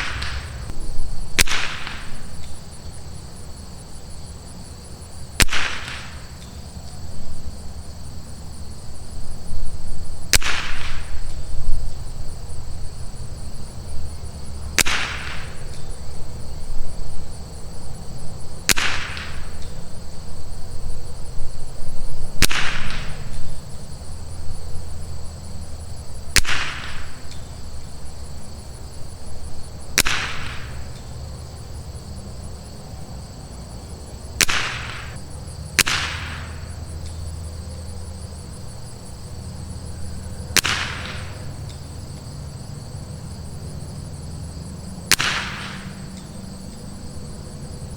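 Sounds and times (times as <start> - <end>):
rifle shots with echo: 0.0 - 2.7, 5.4 - 6.4, 10.3 - 11.4, 14.8 - 15.8, 18.7 - 19.7, 22.4 - 23.5, 26.3 - 27.4, 30.0 - 31.0, 34.4 - 35.2, 35.8 - 36.8, 40.5 - 41.6, 45.1 - 46.2
insect chorus: 0.0 - 47.9.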